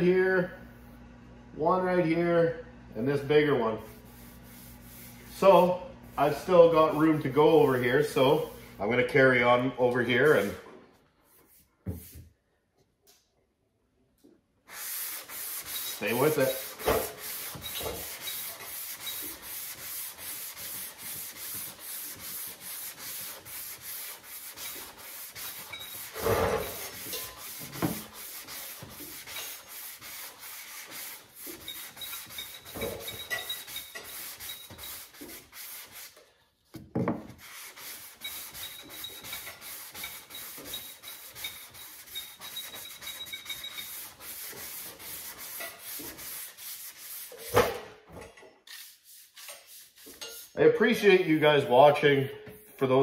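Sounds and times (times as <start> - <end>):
sandpaper rubbing on panel: 3.8 - 8.6, 14.7 - 36.2, 37.3 - 47.6, 48.7 - 51.6.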